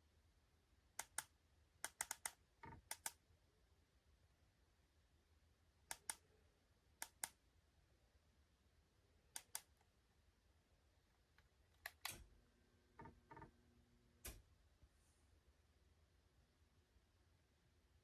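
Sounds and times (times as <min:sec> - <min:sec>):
faint sharp clicks: 0:05.9 - 0:06.2, 0:09.4 - 0:09.9.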